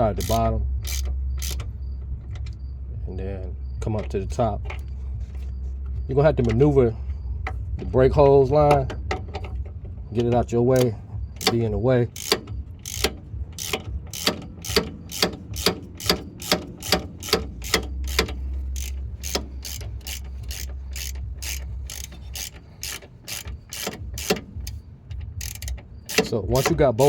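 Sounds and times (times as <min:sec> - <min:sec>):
hand ratchet clicking: 0:00.0 - 0:01.7, 0:08.7 - 0:27.0.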